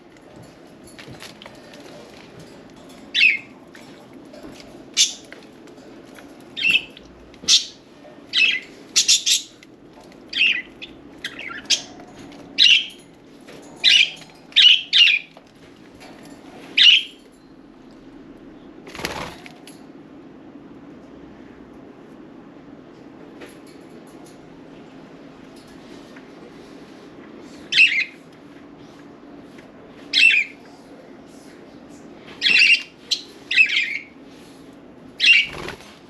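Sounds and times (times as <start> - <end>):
low steady hum: 0.0 - 36.0
budgerigars calling harshly: 32.4 - 34.1, 35.2 - 35.7.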